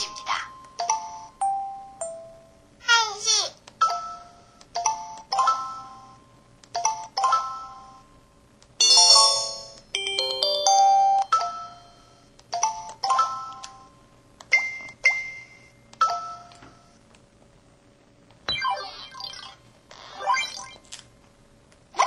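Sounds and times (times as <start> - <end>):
melodic phone jingle: 9.0 - 11.8.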